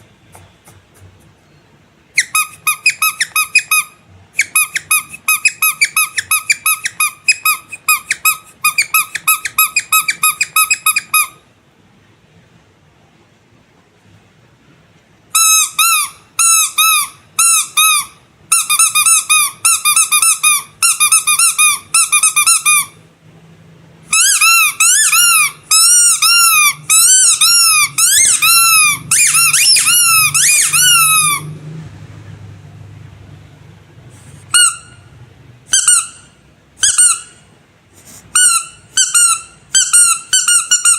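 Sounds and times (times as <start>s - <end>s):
squeaky rubber toy: 2.1s - 11.5s, 15.3s - 23.0s, 24.0s - 31.6s, 34.4s - 37.5s, 38.2s - 40.9s.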